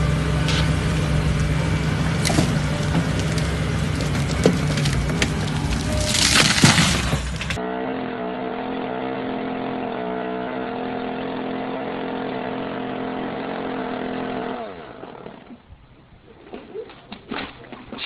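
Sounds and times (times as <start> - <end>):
engine running: 0.0 - 15.7
wood cracking and splintering: 0.4 - 7.6.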